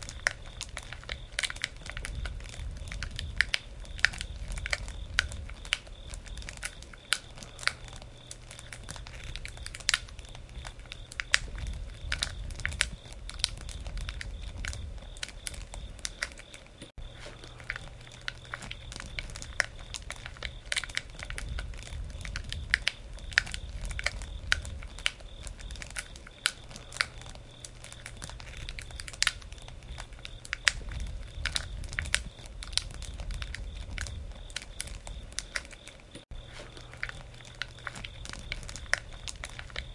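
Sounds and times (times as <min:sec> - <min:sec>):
campfire crackling and popping: 0:00.0 - 0:39.9
low rumble: 0:07.3 - 0:16.0, 0:17.0 - 0:26.0.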